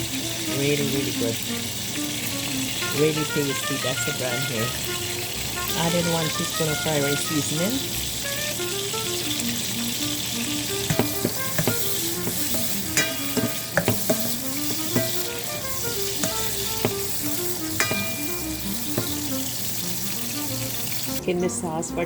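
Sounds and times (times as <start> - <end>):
food sizzling in hot oil: 0.0 - 21.2
utensil knocking against pan: 10.8 - 21.1.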